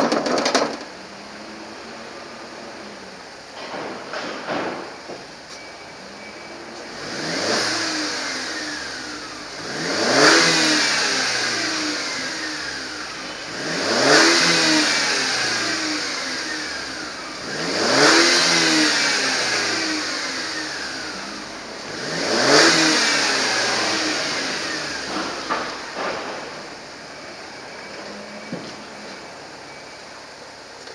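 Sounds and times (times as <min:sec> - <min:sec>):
car engine revving: 0:06.8 - 0:29.5.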